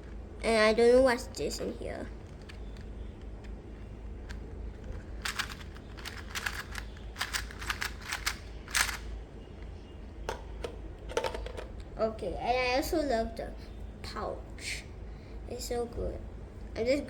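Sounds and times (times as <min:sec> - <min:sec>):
small plastic items clicking: 0:04.2 - 0:09.0.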